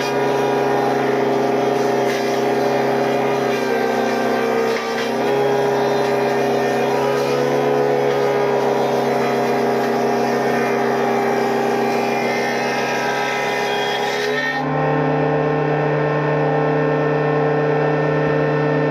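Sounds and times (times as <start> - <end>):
woodworking machine motor hum: 0.0 - 18.9.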